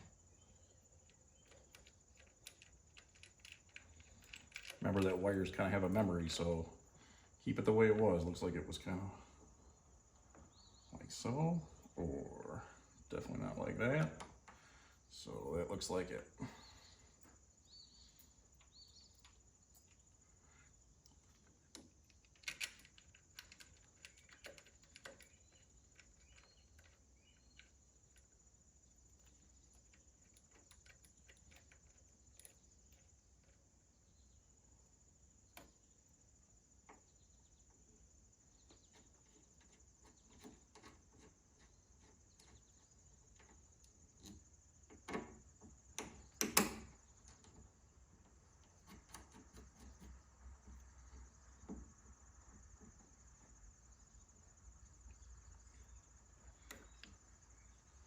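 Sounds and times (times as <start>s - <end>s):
hand tools clicking and knocking: 38.6s - 47.6s.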